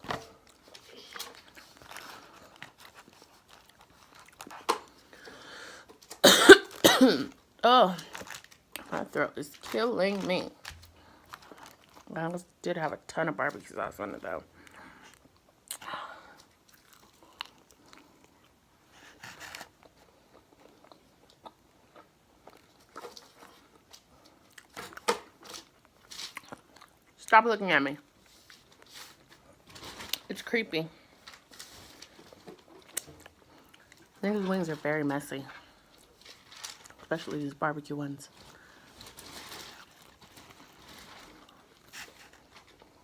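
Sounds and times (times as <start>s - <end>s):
person eating: 0.5s - 6.2s, 14.6s - 25.1s
wet chewing and biting: 1.3s - 5.0s.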